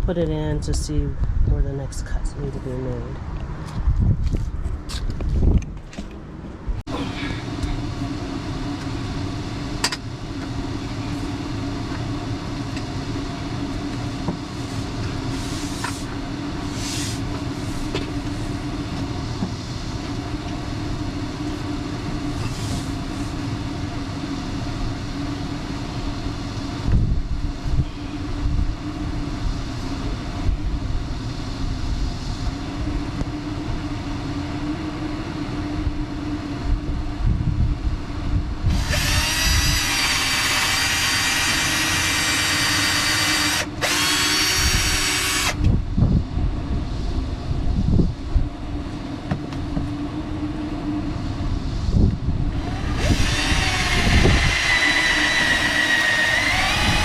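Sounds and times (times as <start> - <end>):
power saw cutting wood: 38.7 - 45.6, 52.6 - 57.0.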